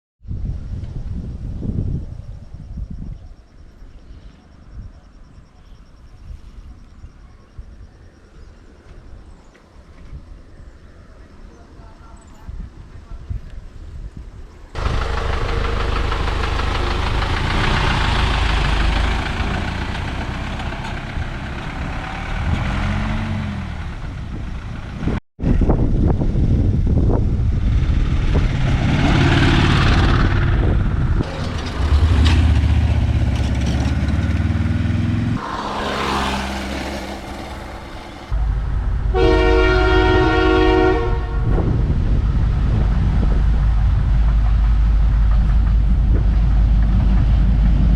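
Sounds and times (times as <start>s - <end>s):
train rumbling: 14.8s - 47.9s
train horn chord: 39.1s - 41.6s.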